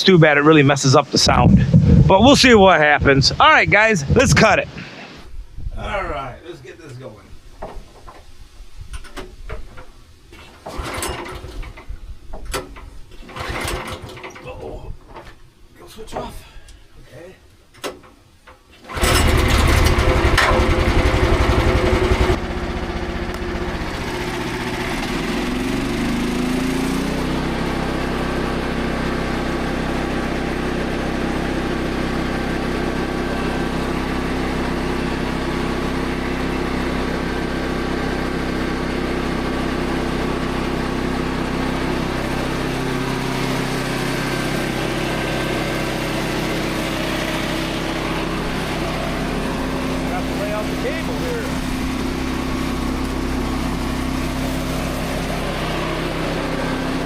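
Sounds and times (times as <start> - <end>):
sawmill engine running: 1.0 - 5.2, 18.9 - 57.0
loud rushing noise: 1.2 - 5.2.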